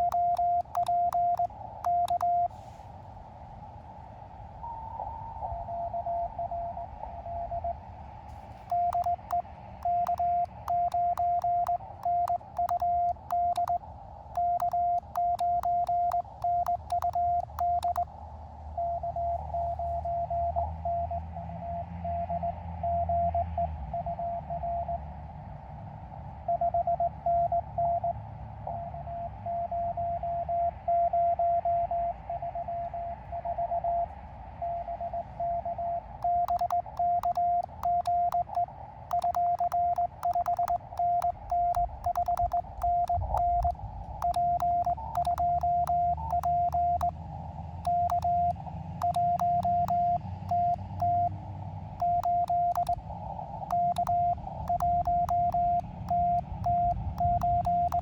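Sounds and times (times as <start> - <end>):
morse code tone: 0.0 - 2.5, 8.7 - 13.8, 14.4 - 18.0, 36.2 - 47.1, 47.9 - 51.3, 52.0 - 53.0, 53.7 - 58.0
weak morse signal: 0.0 - 2.6, 8.7 - 13.8, 14.4 - 18.1, 36.2 - 47.1, 47.9 - 51.3, 52.0 - 53.0, 53.7 - 58.0.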